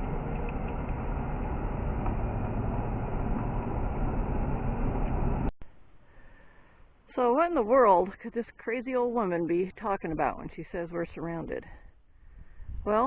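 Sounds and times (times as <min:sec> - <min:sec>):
vehicle engine and road noise: 0:00.0 - 0:05.5.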